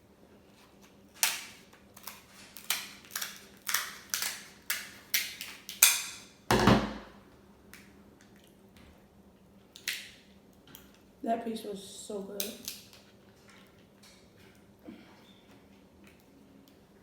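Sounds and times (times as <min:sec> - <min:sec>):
wet crackles of eating seafood: 0:00.7 - 0:06.0, 0:07.7 - 0:11.2, 0:12.4 - 0:17.0.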